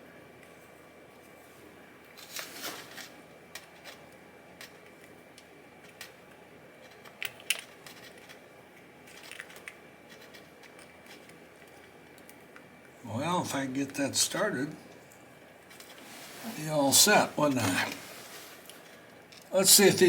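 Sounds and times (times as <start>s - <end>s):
scraping rustles: 2.2s - 4.0s, 15.7s - 19.1s
metal parts clicking and clinking: 2.2s - 5.2s, 5.8s - 12.4s, 18.8s - 19.6s.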